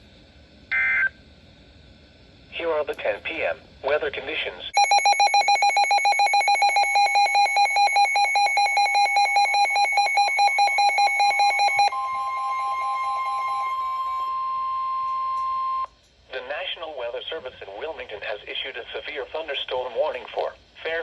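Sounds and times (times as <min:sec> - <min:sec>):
rapid pulsing alarm beep: 0:04.8 - 0:15.9
steady warning alarm tone: 0:04.8 - 0:15.9.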